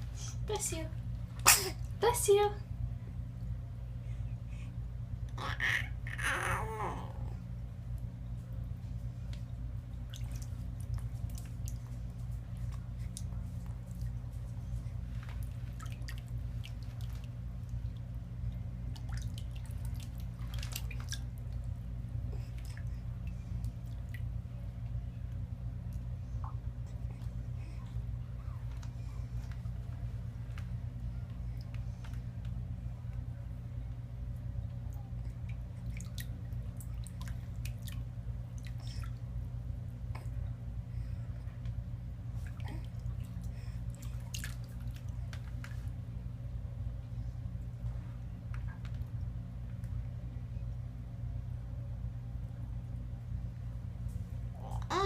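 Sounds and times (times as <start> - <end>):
low hum: 0.0 - 55.0
water dripping in a tub: 9.3 - 14.2, 15.4 - 21.9, 22.6 - 25.0, 34.6 - 39.3, 42.4 - 45.8.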